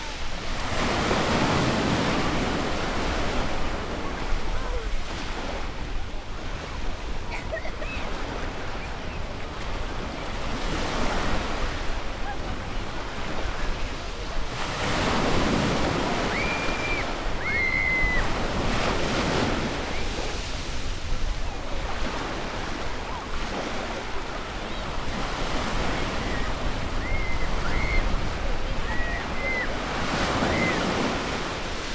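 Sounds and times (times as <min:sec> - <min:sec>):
surf washing onto beach: 0:00.0 - 0:31.9
wind on microphone: 0:00.0 - 0:31.9
children calling: 0:16.0 - 0:18.4, 0:26.0 - 0:30.8.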